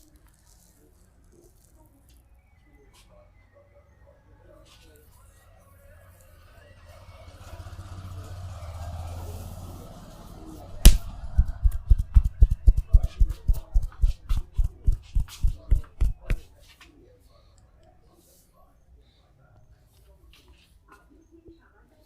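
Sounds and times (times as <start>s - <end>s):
hands slapping on body: 10.8s - 16.5s
soft rustling: 10.8s - 17.0s.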